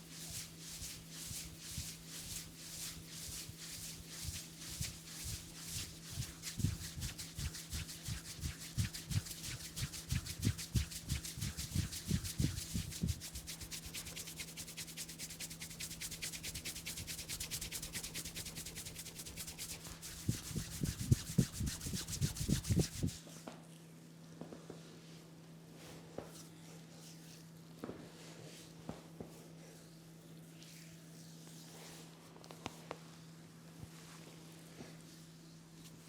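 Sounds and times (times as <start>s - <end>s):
hands rubbing hair briskly: 0.0s - 23.2s.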